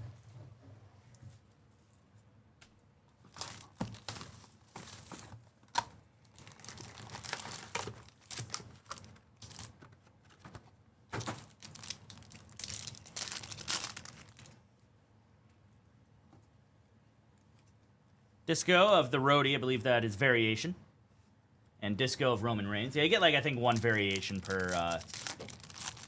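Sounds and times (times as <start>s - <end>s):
card pack wrappers crinkling and tearing: 3.3s - 9.9s, 11.2s - 14.6s, 23.0s - 26.0s.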